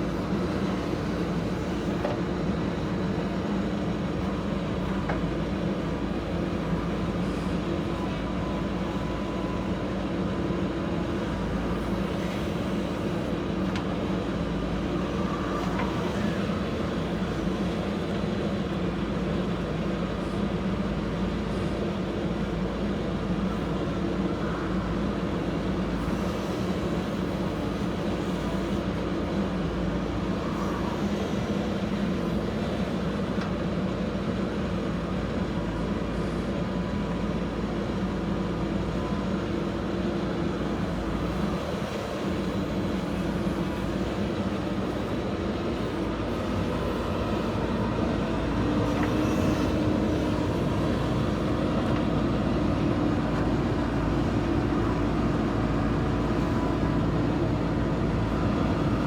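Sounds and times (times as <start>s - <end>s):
diesel engine running: 38.7s - 59.0s.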